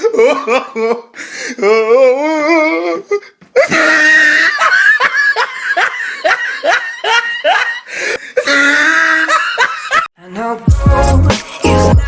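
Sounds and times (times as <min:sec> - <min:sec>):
person laughing hard: 0:03.6 - 0:10.1
music with heavy bass beat: 0:10.7 - 0:12.0.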